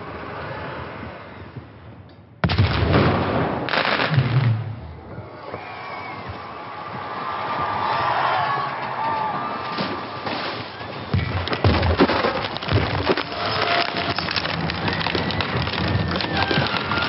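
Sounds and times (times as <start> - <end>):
heavy low crashes: 2.4 - 5.3
hull cracking and splintering: 8.7 - 17.0.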